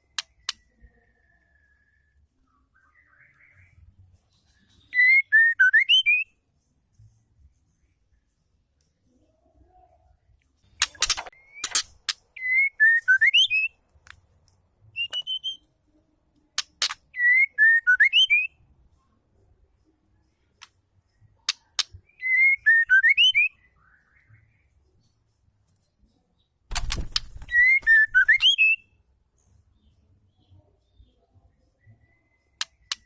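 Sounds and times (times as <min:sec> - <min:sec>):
bird whistled call: 0:04.9 - 0:06.3, 0:15.0 - 0:15.6, 0:22.1 - 0:24.3, 0:27.4 - 0:28.9
bird sharp clicks: 0:26.7 - 0:28.6, 0:32.6 - 0:33.0.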